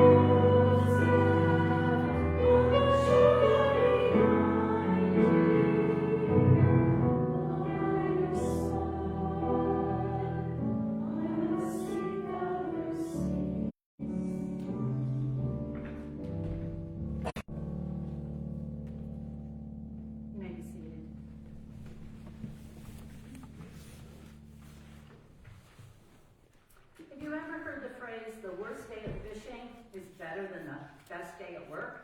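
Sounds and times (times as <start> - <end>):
person singing with instruments: 0.0 - 13.1.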